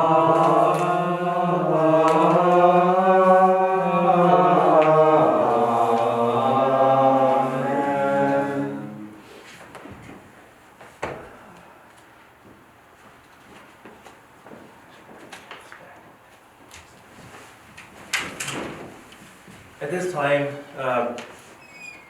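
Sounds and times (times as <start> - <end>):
voices singing a slow chant: 0.0 - 9.4.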